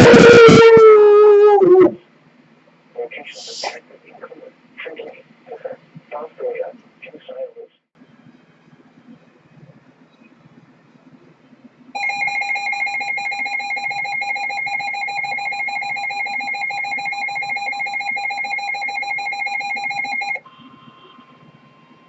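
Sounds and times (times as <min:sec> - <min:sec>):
two-tone attention signal: 0:12.0 - 0:21.4.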